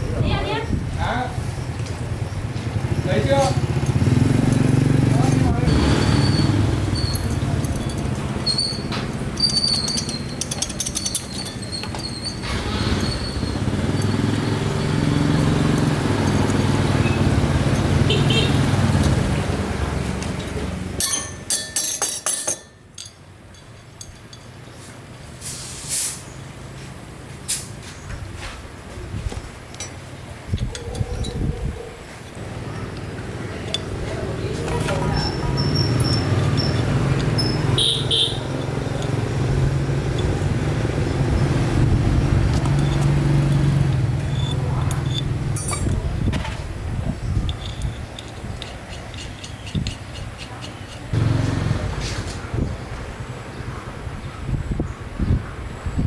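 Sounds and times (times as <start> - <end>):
sharp metal clinks: 3.3 - 18.5, 21.0 - 24.8, 34.7 - 41.4, 42.6 - 46.3
short hissing bursts: 25.4 - 26.3.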